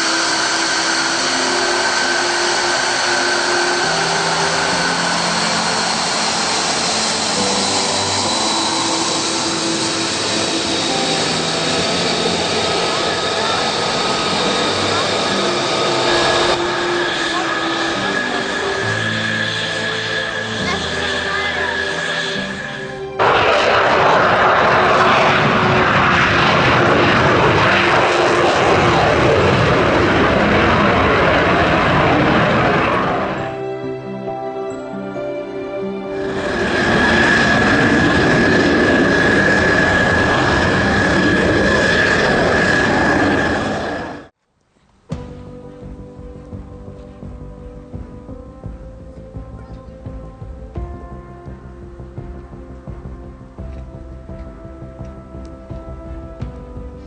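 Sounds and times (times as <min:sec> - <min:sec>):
music: 0:00.0 - 0:44.2, 0:45.0 - 0:57.0
jet engine with turbine whine: 0:00.0 - 0:44.4.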